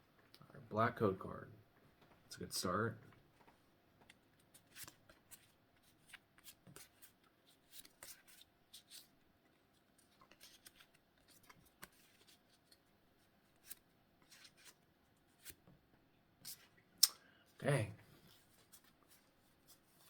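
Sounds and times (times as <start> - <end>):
trading cards rustling and flicking: 4.0 - 15.6.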